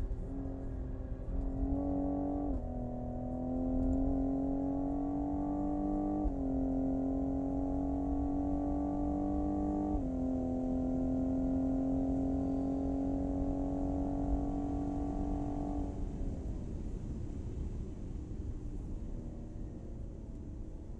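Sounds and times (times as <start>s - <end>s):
car engine revving high: 0.1s - 16.0s.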